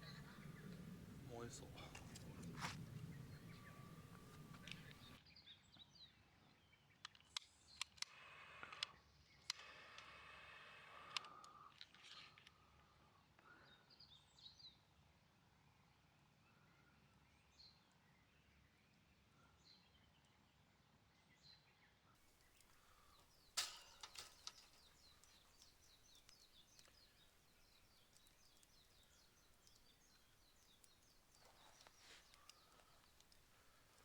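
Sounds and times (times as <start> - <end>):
campfire crackling: 0.0 - 5.2, 22.2 - 34.0.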